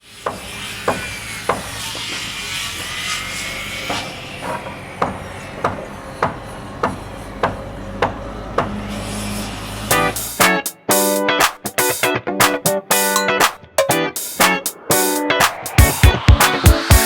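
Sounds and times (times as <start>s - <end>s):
pile driver hammer blows: 3.9s - 9.0s.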